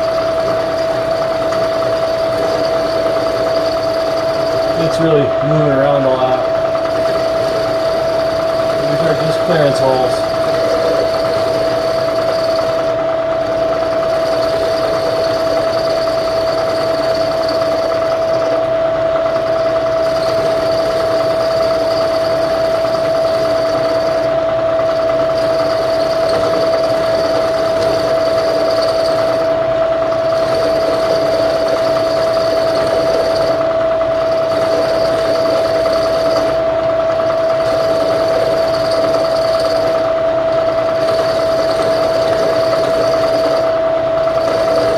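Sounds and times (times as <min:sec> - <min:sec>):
milling machine whining: 0:00.0 - 0:44.9.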